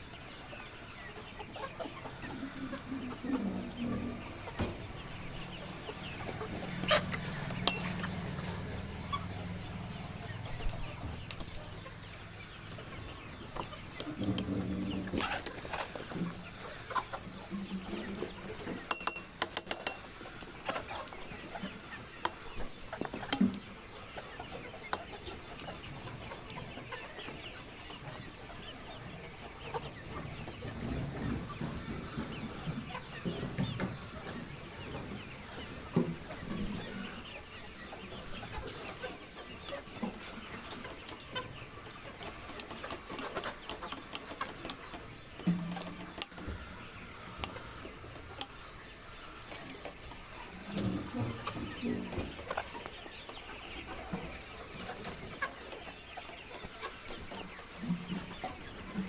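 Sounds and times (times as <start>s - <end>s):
chickens clucking: 0.0s - 59.0s
clicks and knocks: 18.2s - 20.2s.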